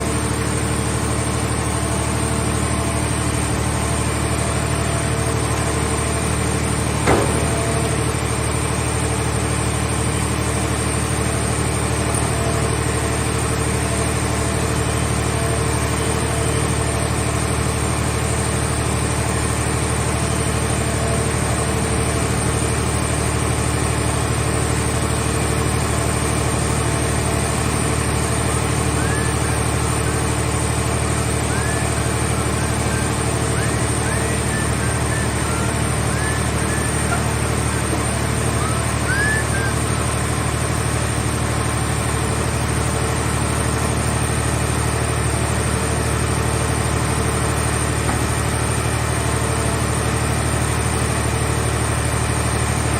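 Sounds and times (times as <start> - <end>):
machine engine humming: 0.0 - 52.9
sharp knock: 7.1 - 7.9.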